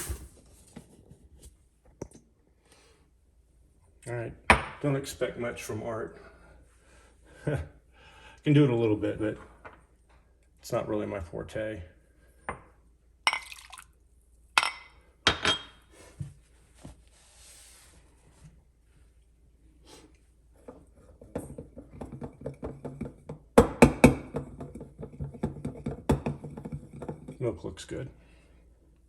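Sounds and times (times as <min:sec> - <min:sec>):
cups and glassware clinking: 0:13.3 - 0:13.9, 0:14.6 - 0:15.8.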